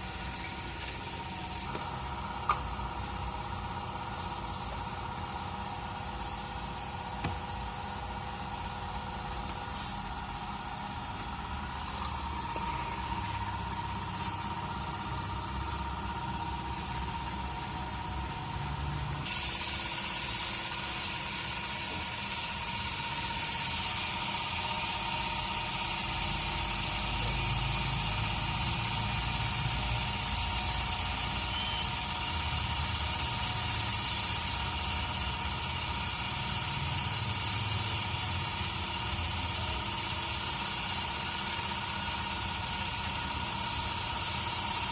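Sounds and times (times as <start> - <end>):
paint spray gun hissing: 0.0 - 16.4, 19.2 - 44.9.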